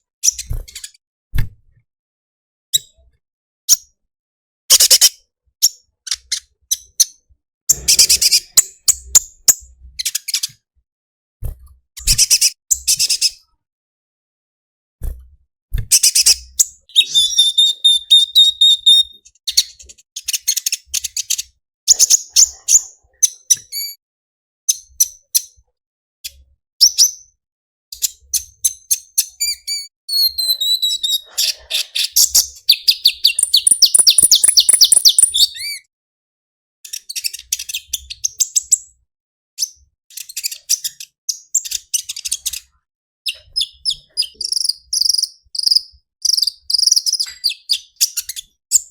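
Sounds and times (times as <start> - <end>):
songbird twittering: 16.9 - 19.2, 32.6 - 35.8, 43.3 - 48.0.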